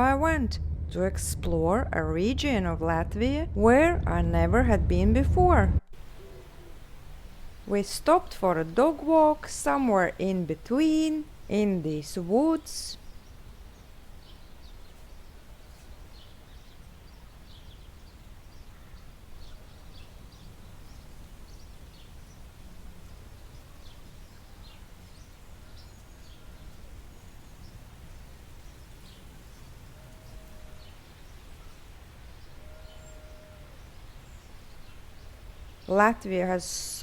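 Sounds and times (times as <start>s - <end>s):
low background rumble: 0.0s - 13.0s
small birds chirping: 10.8s - 36.7s.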